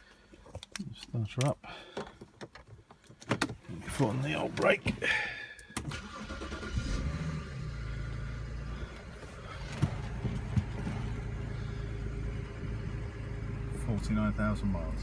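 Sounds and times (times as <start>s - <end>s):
car engine starting and idling: 3.5s - 15.0s.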